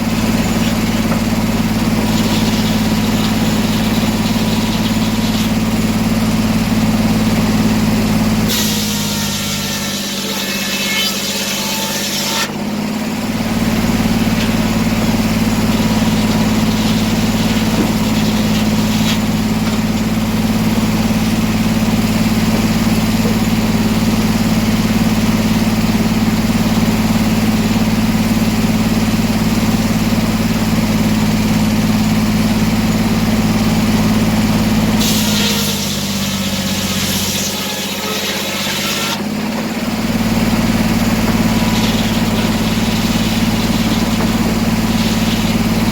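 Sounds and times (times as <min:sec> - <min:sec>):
sawmill engine running: 0:00.0 - 0:45.9.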